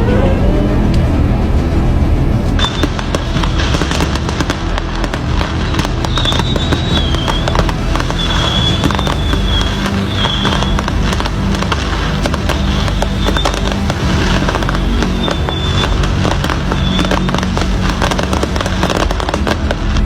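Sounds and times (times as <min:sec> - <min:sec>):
fireworks crackling pops: 0:02.4 - 0:20.0
high wavering firework whistle: 0:02.5 - 0:20.0.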